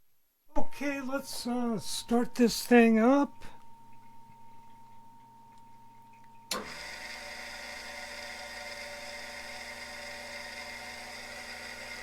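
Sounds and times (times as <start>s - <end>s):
grinder motor humming: 6.5s - 12.0s.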